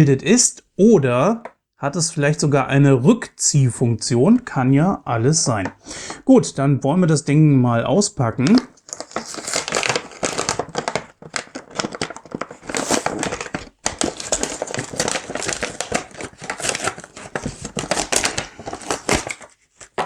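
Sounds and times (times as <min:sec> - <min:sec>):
packaging crinkling and rustling: 0:08.4 - 0:20.0.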